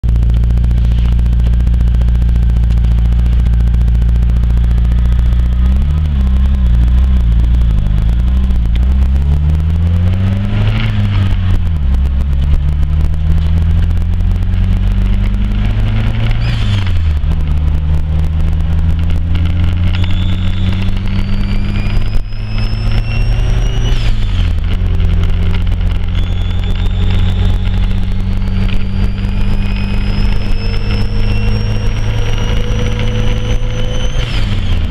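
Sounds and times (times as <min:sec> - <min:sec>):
engine idling and revving: 0:00.0 - 0:34.9
high whistle rising in pitch: 0:19.9 - 0:24.4, 0:26.0 - 0:34.4.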